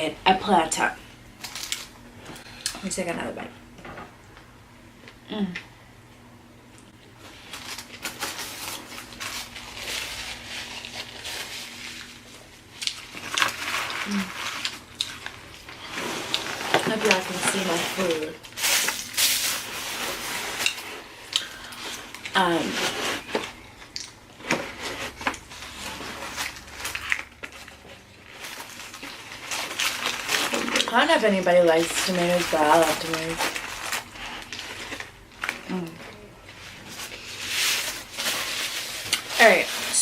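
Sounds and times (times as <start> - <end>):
chewing sandwich: 12.0 - 16.5, 23.8 - 30.9.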